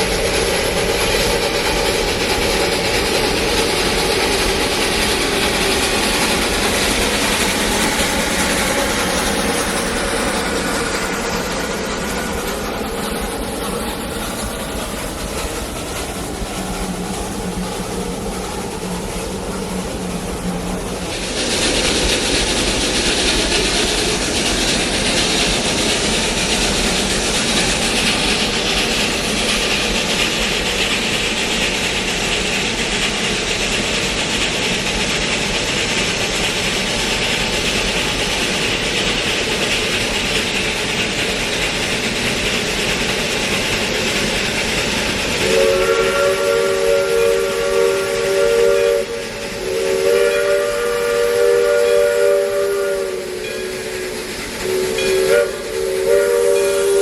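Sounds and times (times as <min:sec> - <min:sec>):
steam locomotive hissing: 0:00.0 - 0:57.0
steam whistle chord: 0:45.4 - 0:57.0.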